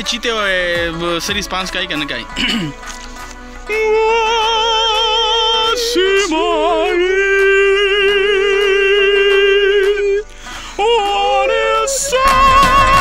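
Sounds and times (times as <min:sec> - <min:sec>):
high voice singing long notes: 0:03.7 - 0:13.0.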